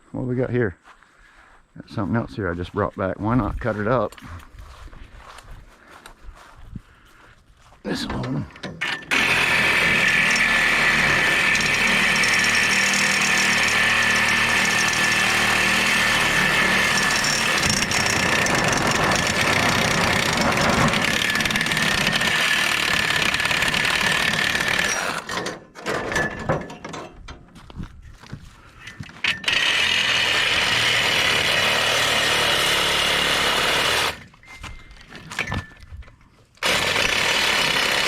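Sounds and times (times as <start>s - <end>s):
power tool cutting metal: 8.8s - 25.4s, 29.2s - 34.3s, 36.6s - 38.0s.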